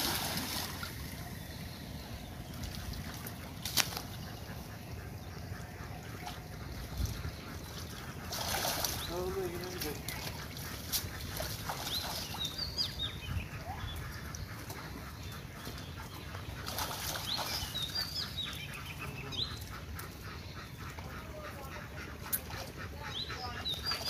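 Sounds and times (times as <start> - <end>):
steady low background noise: 0.0 - 8.4
birds chirping: 0.0 - 24.0.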